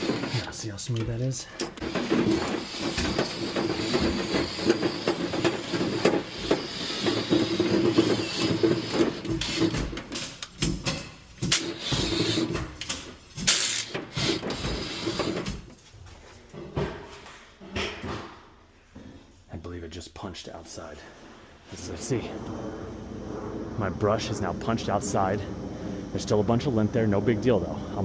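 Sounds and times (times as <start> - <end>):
drill motor hum: 0.0 - 0.6, 1.6 - 10.0, 11.5 - 12.6, 13.5 - 15.5, 22.1 - 28.0.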